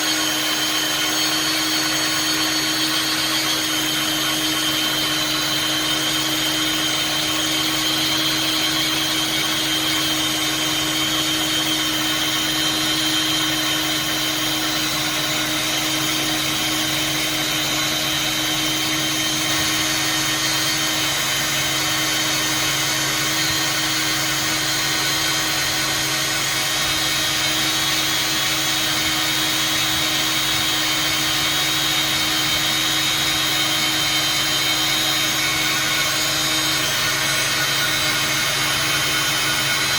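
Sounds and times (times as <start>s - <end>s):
welding machine whirring: 29.4s - 39.9s.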